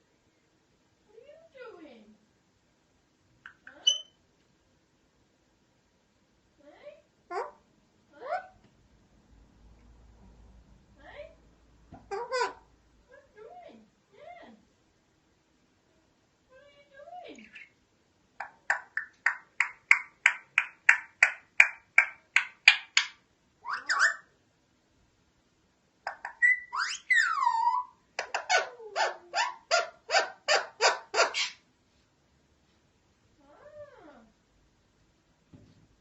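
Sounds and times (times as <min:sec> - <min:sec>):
parakeet calling: 0:03.5 - 0:04.2, 0:12.0 - 0:12.7, 0:18.4 - 0:24.3, 0:26.0 - 0:31.6.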